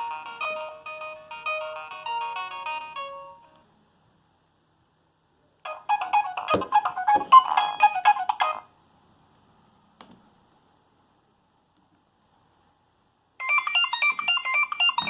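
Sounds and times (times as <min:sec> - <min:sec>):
mobile phone ringtone: 0:00.0 - 0:03.5, 0:13.4 - 0:15.0.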